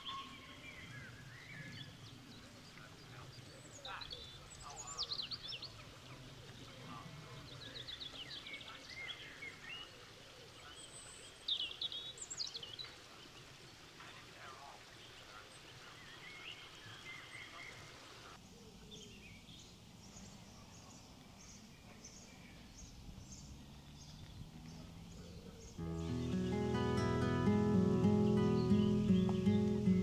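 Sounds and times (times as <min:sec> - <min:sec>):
birds chirping and trilling: 0:21.4 - 0:30.0.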